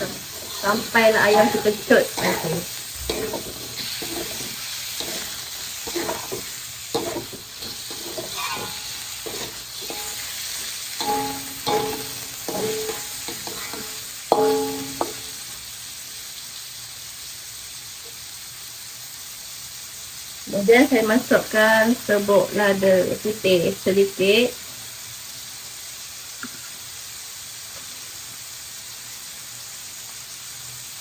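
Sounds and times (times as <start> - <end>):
spatula scraping metal pan: 0.0 - 15.5
chicken sizzling in a pan: 0.0 - 31.0.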